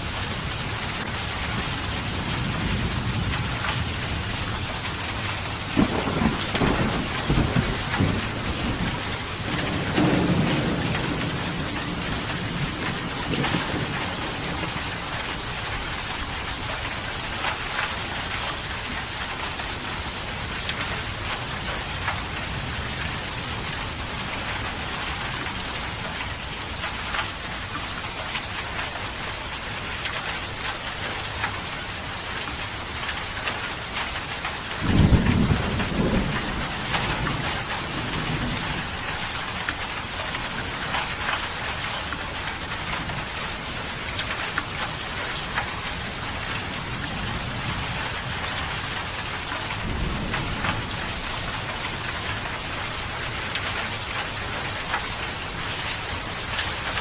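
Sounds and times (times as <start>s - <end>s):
thunder rumbling: 0.0s - 15.6s, 34.6s - 41.4s, 42.3s - 54.3s
heavy rain falling: 0.0s - 57.0s
thunder clap: 5.6s - 14.8s, 34.8s - 39.0s.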